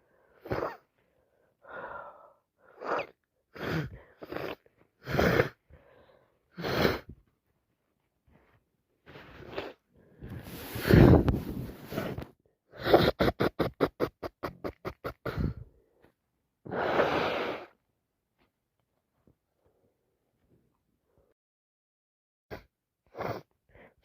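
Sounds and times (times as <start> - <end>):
noisy breath: 0.0 - 4.4, 5.0 - 7.1, 8.4 - 12.3.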